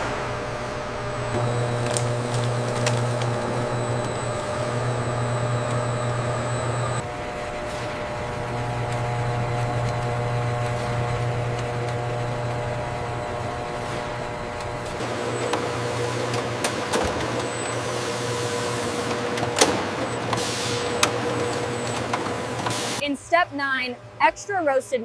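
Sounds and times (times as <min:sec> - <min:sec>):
machinery low hum: 0:00.0 - 0:19.4
machinery whining tones: 0:00.0 - 0:23.0.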